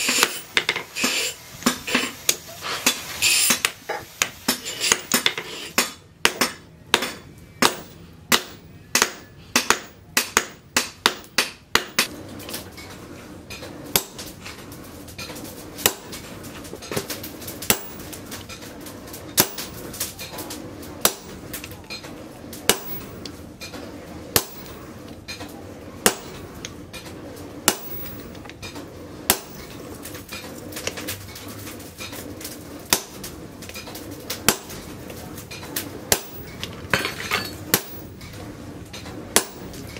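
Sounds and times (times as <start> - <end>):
hammer striking steel on anvil: 4.5 - 12.1, 17.7 - 18.1, 19.4 - 19.7, 21.0 - 21.4, 22.7 - 23.2, 24.4 - 24.8, 26.0 - 26.4, 27.7 - 28.3, 29.3 - 29.7, 36.1 - 38.2, 39.4 - 39.8
steady hum: 13.0 - 39.9.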